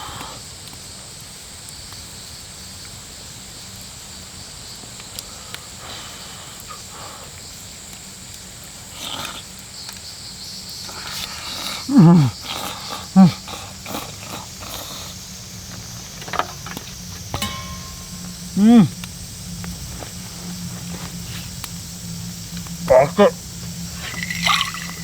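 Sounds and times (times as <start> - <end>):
outdoor background hiss: 0.0 - 25.0
thin high whine: 14.3 - 25.0
voice-like call falling in pitch: 17.4 - 25.0.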